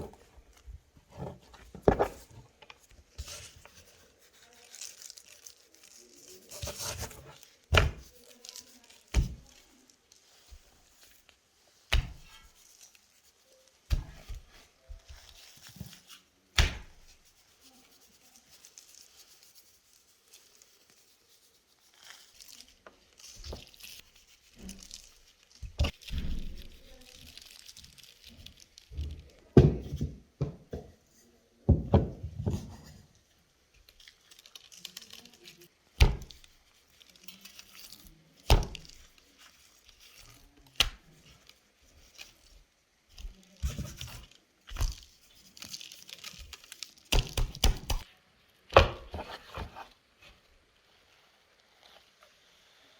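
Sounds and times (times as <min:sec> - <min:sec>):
rustling and crinkling: 0:00.0 - 0:52.9
dull thuds and sharp knocks: 0:36.0 - 0:36.4.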